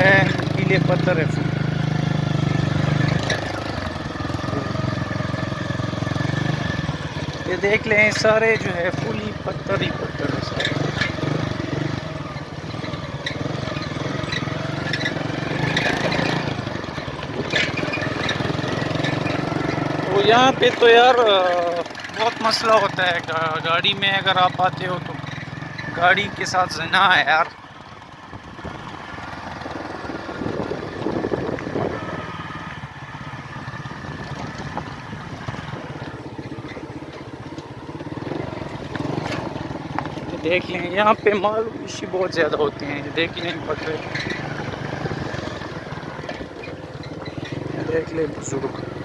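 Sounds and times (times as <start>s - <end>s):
motorcycle engine running: 0.0s - 49.0s
wind noise on microphone: 29.9s - 32.5s, 33.9s - 36.0s.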